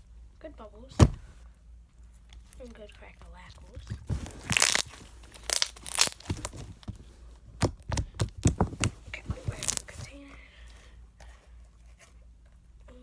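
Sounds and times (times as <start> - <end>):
slime crackling pops: 4.2 - 6.6, 7.6 - 10.0.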